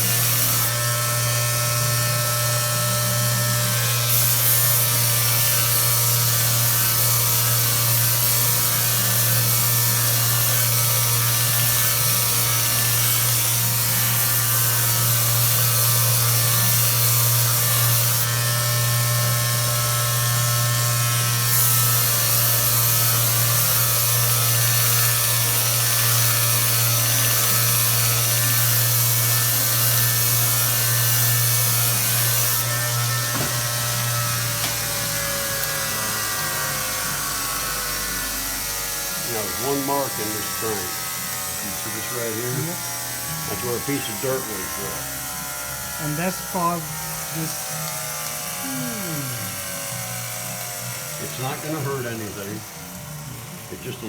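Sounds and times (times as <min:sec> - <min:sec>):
abrasive polishing hiss: 0:00.0 - 0:00.8, 0:21.5 - 0:52.7
polishing machine humming: 0:00.0 - 0:54.0.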